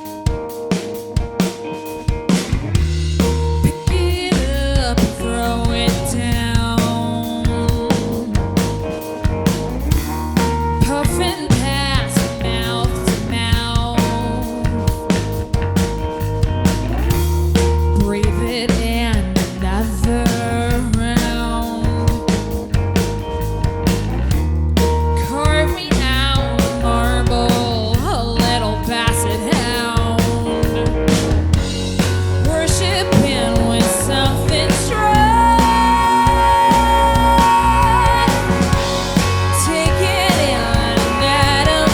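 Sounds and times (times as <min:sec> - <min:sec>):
drums keeping a steady beat: 0:00.0 - 0:41.9
rock band playing live: 0:00.0 - 0:41.9
woman singing lead vocal: 0:03.6 - 0:09.0, 0:10.8 - 0:15.3, 0:17.9 - 0:22.6, 0:25.2 - 0:30.9, 0:32.4 - 0:41.9.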